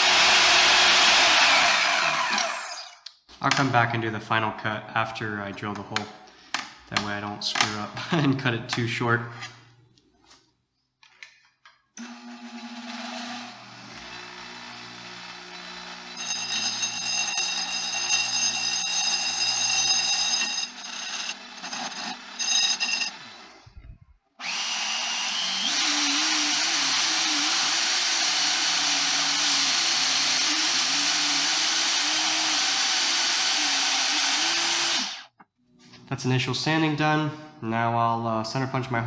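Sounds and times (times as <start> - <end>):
power sander sanding steel: 0.0 - 2.8, 24.4 - 35.3.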